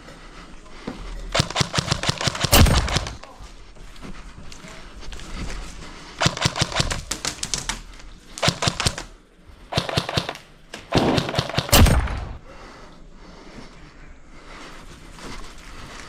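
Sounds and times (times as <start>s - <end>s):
airsoft rifle firing bursts: 1.3s - 3.3s, 6.2s - 12.4s.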